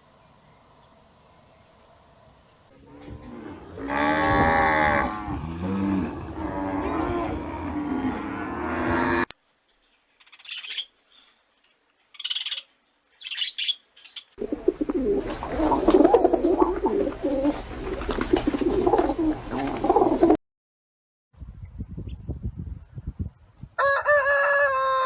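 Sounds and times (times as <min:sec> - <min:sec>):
birds chirping: 0:00.0 - 0:02.7, 0:09.7 - 0:14.7.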